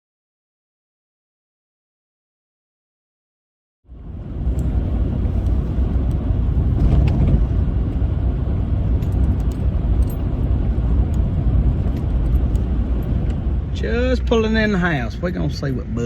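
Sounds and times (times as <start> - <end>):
engine and road rumble: 3.8 - 16.0.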